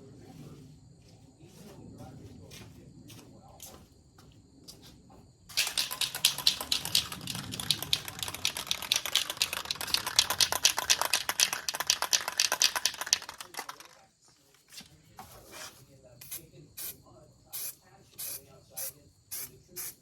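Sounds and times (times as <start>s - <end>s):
aerosol can ball rattling: 5.5s - 14.0s.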